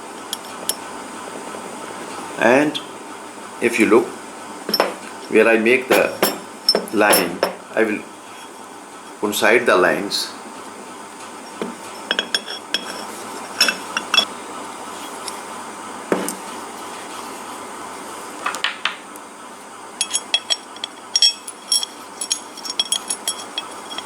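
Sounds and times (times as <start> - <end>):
small metal parts clinking: 4.7 - 7.6, 11.5 - 14.3, 20.0 - 24.0.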